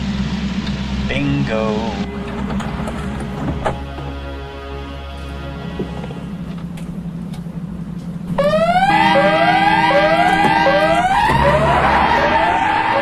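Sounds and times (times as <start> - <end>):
low steady hum: 0.0 - 12.6
car alarm siren sweeping in pitch: 8.4 - 13.0.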